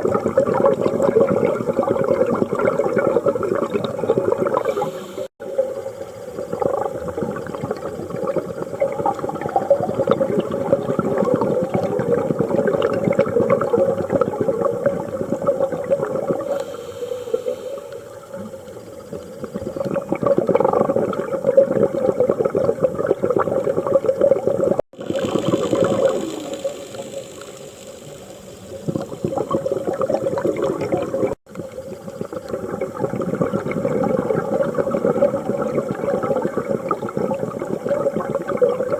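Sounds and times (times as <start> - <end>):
diver breathing through regulator: 4.5 - 5.3, 16.4 - 18.2.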